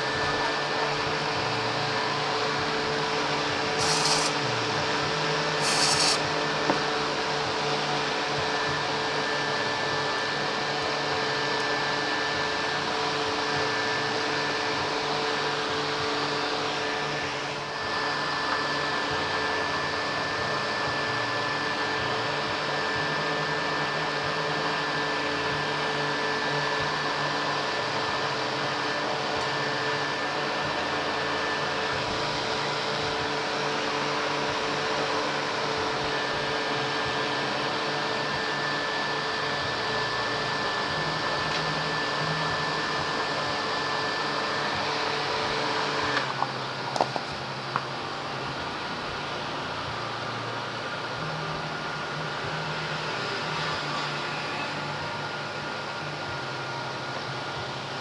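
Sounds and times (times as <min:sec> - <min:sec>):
fan motor whirring hum: 0:00.0 - 0:58.0.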